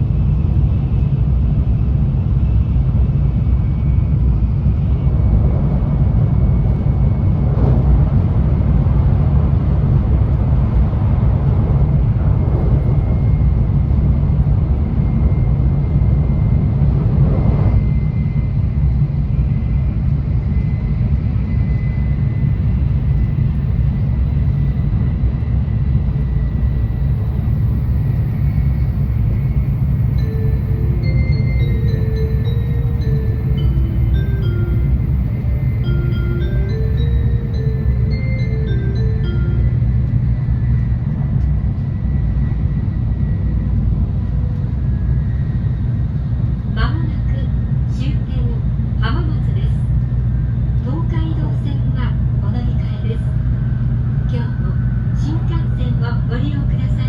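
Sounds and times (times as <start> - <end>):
train running gear rumble: 0.0 - 57.0
faint high whine: 17.6 - 43.7.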